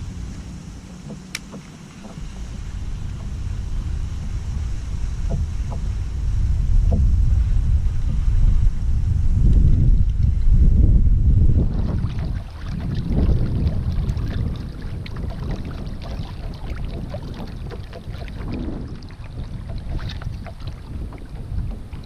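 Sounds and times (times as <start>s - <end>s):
water lapping against plastic hull: 0.0s - 6.0s, 11.5s - 22.0s
wind rumbling on microphone: 0.0s - 22.0s.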